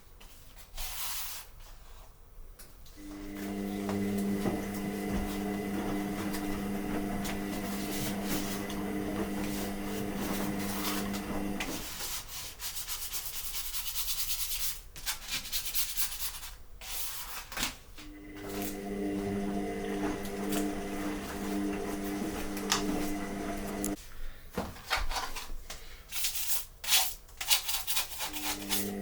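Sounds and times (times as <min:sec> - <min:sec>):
steady hum: 0:03.0 - 0:11.7, 0:18.0 - 0:24.0
scraper rasping on steel plate: 0:27.0 - 0:29.0.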